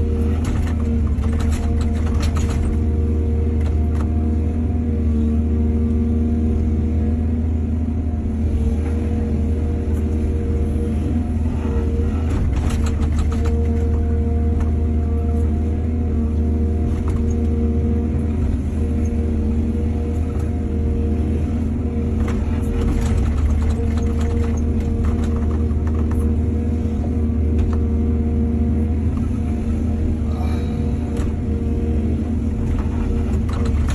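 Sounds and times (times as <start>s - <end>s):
excavator diesel engine droning: 0.0s - 33.9s
clanks and rattles: 0.2s - 3.0s, 12.2s - 14.7s, 22.2s - 26.4s, 32.6s - 33.9s
steady hum: 18.1s - 33.9s.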